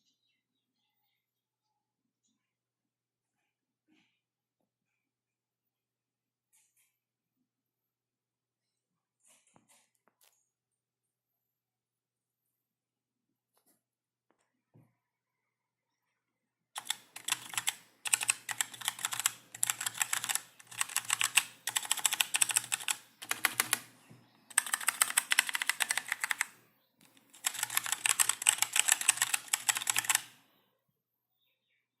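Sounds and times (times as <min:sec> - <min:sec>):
fast typing on mechanical keyboard: 0:16.8 - 0:23.9, 0:24.5 - 0:30.4.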